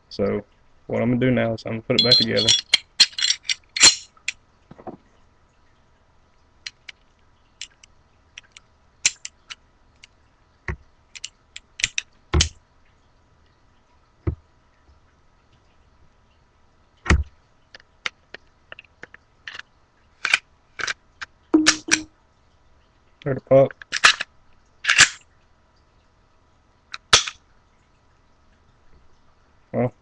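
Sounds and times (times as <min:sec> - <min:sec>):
pistol parts clicking: 0:02.0 - 0:04.4, 0:07.6 - 0:09.5, 0:11.2 - 0:12.5, 0:20.2 - 0:21.0, 0:21.6 - 0:22.1, 0:23.8 - 0:24.3, 0:24.9 - 0:25.2, 0:27.0 - 0:27.4.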